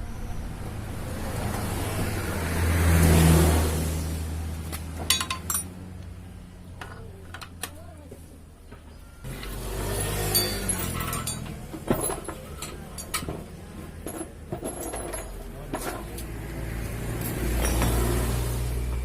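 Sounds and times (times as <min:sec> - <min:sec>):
motor vehicle engine hum: 0:00.0 - 0:19.0
sharp metallic clinks: 0:05.1 - 0:05.8, 0:10.0 - 0:13.4, 0:17.5 - 0:18.3.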